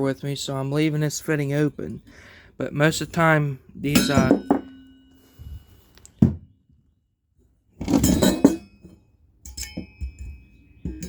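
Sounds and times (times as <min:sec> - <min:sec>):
metal pipe fittings clinking: 0:03.8 - 0:06.2, 0:07.8 - 0:11.0.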